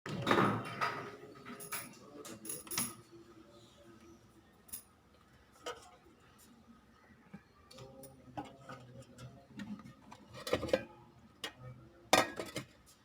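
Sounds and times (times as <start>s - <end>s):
glassware and containers clinking: 0.1s - 3.1s, 12.2s - 12.8s.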